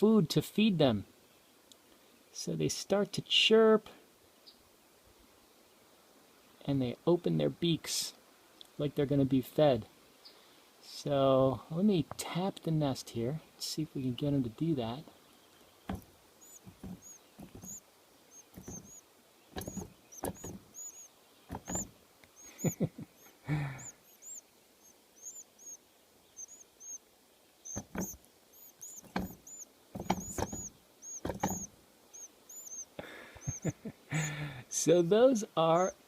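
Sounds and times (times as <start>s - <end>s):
nestling birds begging chirps: 14.0s - 36.0s
taps and knocks on nest: 15.9s - 17.8s, 18.4s - 19.0s, 19.6s - 21.9s, 27.7s - 31.7s.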